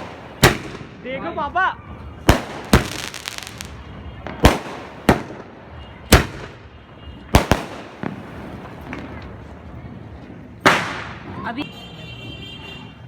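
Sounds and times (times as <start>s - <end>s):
fireworks bangs: 0.0s - 1.1s, 2.1s - 9.5s
faint fireworks crackle: 0.0s - 12.9s.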